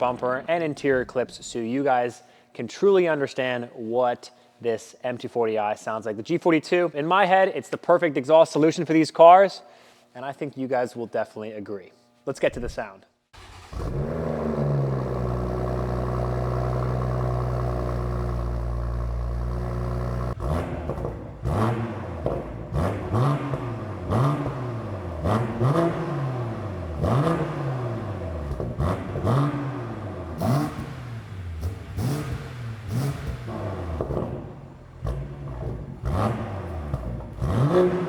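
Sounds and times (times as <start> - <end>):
car engine starting and idling: 13.3 - 38.0
car engine revving: 13.4 - 38.0.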